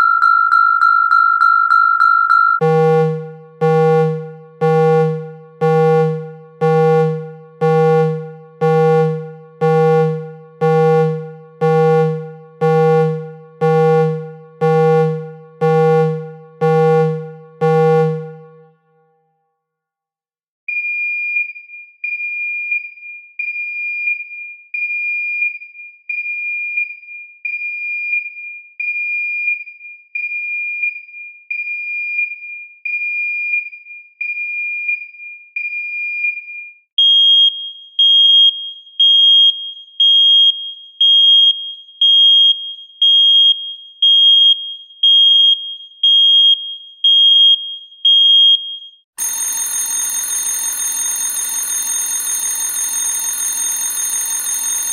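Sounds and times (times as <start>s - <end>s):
alarm bell ringing: 0.0s - 18.7s, 49.2s - 54.9s
electronic alarm beeping: 0.0s - 18.7s, 49.2s - 54.9s.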